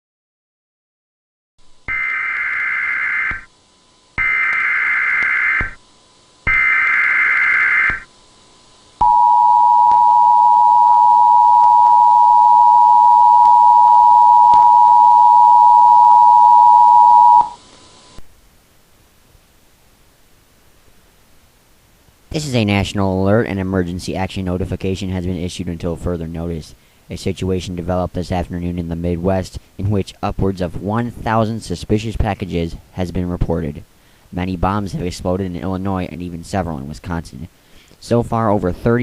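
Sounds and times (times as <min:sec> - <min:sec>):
screeching data tones: 0:01.9 - 0:03.5, 0:04.2 - 0:05.8, 0:06.4 - 0:08.1, 0:09.0 - 0:17.6
two-tone attention signal: 0:09.0 - 0:17.6.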